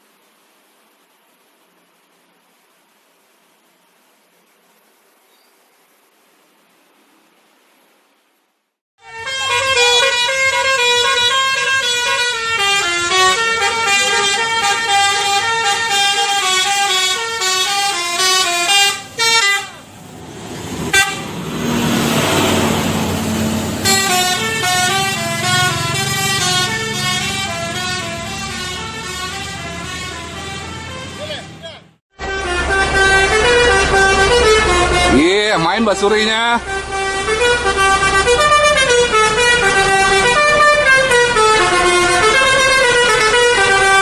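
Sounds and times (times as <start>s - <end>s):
rush of noise with low hum: 0.0s - 8.8s
musical bus horn playing a tune: 9.0s - 20.1s, 20.9s - 35.4s, 36.0s - 44.0s.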